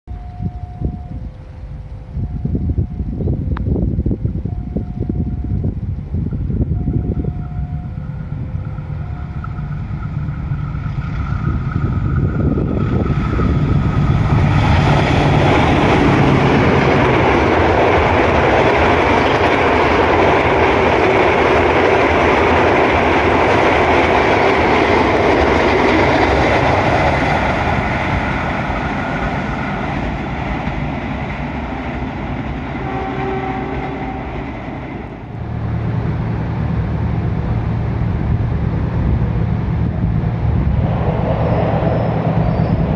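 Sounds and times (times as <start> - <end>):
train passing at speed: 0.1 - 42.9
wheel-on-rail noise: 0.1 - 42.9
steady horn-like tone: 32.7 - 36.0.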